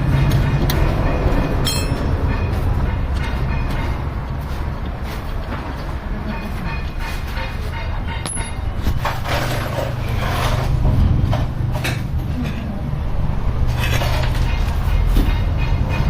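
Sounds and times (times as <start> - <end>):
low mechanical drone: 0.0 - 16.0
metallic knocks and clicks: 0.2 - 2.3.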